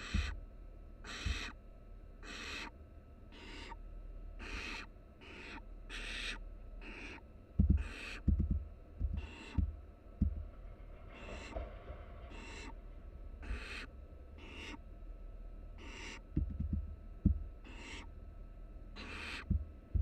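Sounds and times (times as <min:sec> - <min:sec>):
owl nestlings hissing calls: 0:00.0 - 0:00.4, 0:01.0 - 0:01.6, 0:02.2 - 0:02.7, 0:03.3 - 0:03.8, 0:04.4 - 0:07.2, 0:07.8 - 0:08.3, 0:09.1 - 0:09.8, 0:11.1 - 0:11.6, 0:12.3 - 0:12.8, 0:13.4 - 0:14.8, 0:15.8 - 0:16.4, 0:17.6 - 0:18.1, 0:19.0 - 0:19.6
short low thumps: 0:00.0 - 0:00.4, 0:07.6 - 0:10.6, 0:16.2 - 0:17.7, 0:19.4 - 0:20.0.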